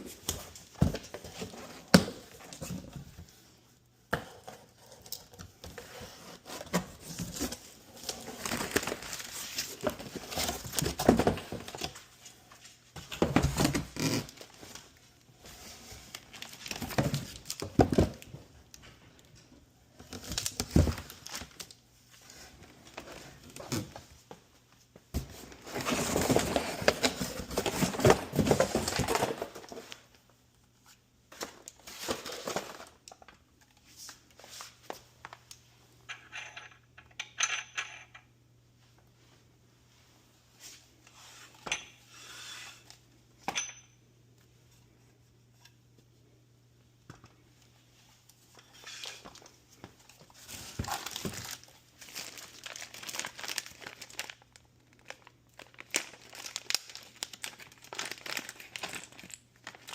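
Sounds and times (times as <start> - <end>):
packaging rustling and tearing: 6.4 - 12.0, 13.4 - 14.9, 16.1 - 18.2, 25.4 - 30.0, 50.1 - 59.9
knocks and clinks of parts: 36.1 - 38.3.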